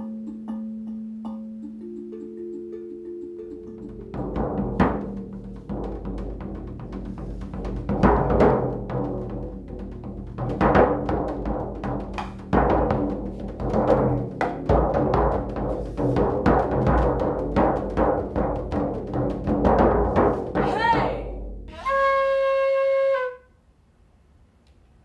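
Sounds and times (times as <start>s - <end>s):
drum beaten quickly: 3.8s - 22.1s.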